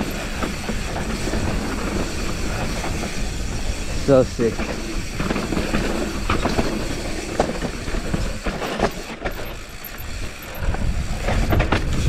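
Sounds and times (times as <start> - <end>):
bike chain and frame rattling: 0.0 - 12.0
bike tyres rolling over dirt: 0.0 - 12.0
wind on microphone: 10.0 - 12.0.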